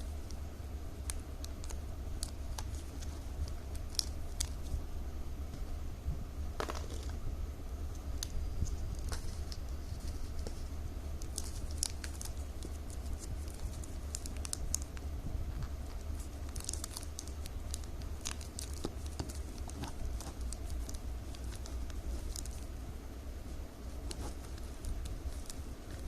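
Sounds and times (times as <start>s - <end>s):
steady low hum: 0.0s - 26.0s
plastic strips crinkling: 1.0s - 4.8s, 8.0s - 22.8s, 23.8s - 26.0s.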